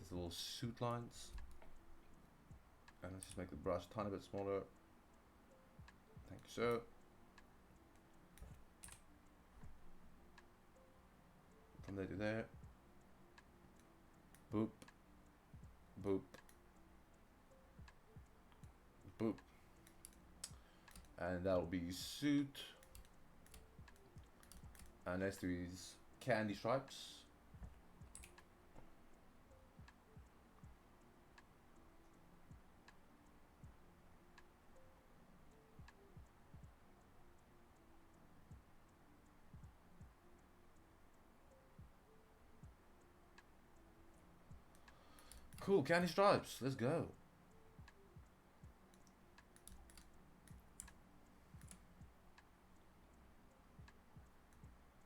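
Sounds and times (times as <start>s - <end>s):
mouse and keyboard clicks: 8.4s - 9.1s, 19.8s - 21.2s, 22.8s - 25.0s, 48.9s - 51.0s.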